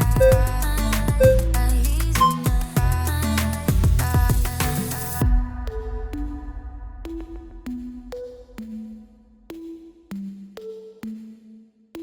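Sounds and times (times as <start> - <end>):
plucked synth bass line: 0.0 - 2.6.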